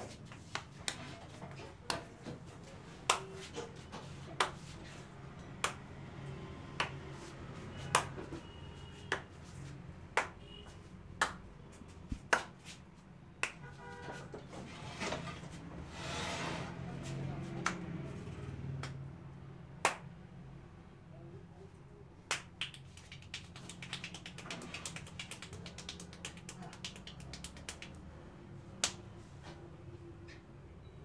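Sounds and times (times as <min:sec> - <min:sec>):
hands clapping sharply: 0:00.2 - 0:01.2, 0:03.0 - 0:03.5, 0:04.3 - 0:04.7, 0:05.6 - 0:05.9, 0:06.7 - 0:07.1, 0:07.8 - 0:08.4, 0:09.1 - 0:09.4, 0:10.1 - 0:11.5, 0:12.1 - 0:13.8, 0:17.6 - 0:18.0, 0:18.7 - 0:19.0, 0:19.8 - 0:20.2, 0:22.3 - 0:28.1, 0:28.7 - 0:29.1
hands rubbing over hair: 0:22.6 - 0:28.0.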